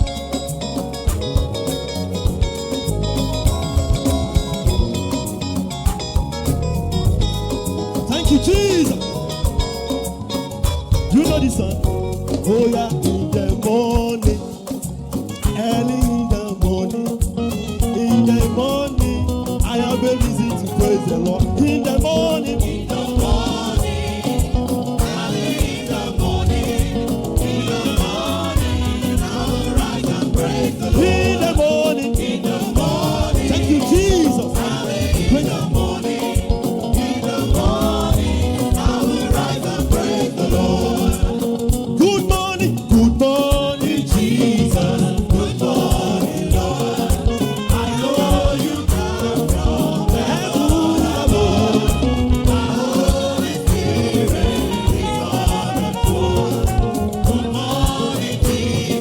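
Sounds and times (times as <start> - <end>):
band playing dance beat: 0.0 - 59.0
singers singing: 15.4 - 59.0.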